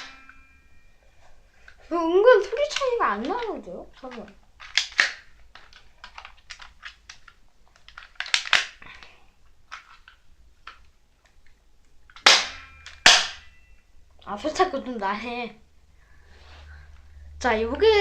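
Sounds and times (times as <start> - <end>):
plastic toy guns clicking and rattling: 1.6 - 13.4
bb gun firing crack: 4.6 - 5.3, 12.2 - 13.6.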